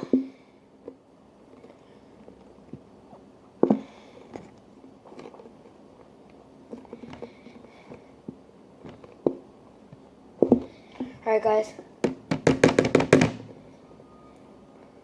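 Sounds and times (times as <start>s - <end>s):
taps and knocks on a table: 12.0s - 13.5s.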